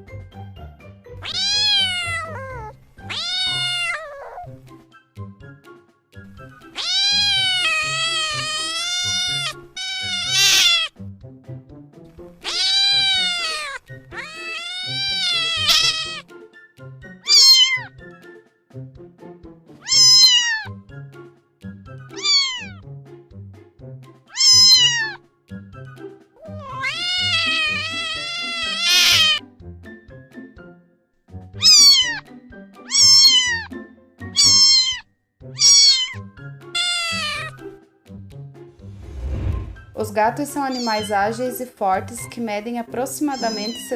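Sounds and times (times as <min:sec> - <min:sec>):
soft background music: 0:00.0 - 0:43.9
cat meowing: 0:01.2 - 0:04.6, 0:06.7 - 0:10.9, 0:12.4 - 0:16.3, 0:17.2 - 0:17.9, 0:19.8 - 0:20.8, 0:22.1 - 0:22.8, 0:24.3 - 0:25.2, 0:26.4 - 0:29.4, 0:31.6 - 0:37.6, 0:40.6 - 0:41.2, 0:43.3 - 0:43.9.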